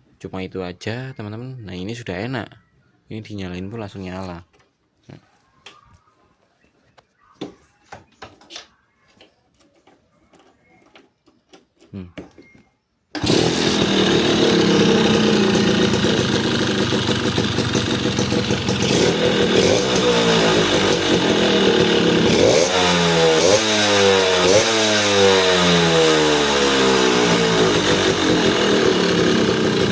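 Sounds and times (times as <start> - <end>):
motorcycle engine idling: 13.2 - 29.9
motorcycle engine revving: 13.2 - 29.9.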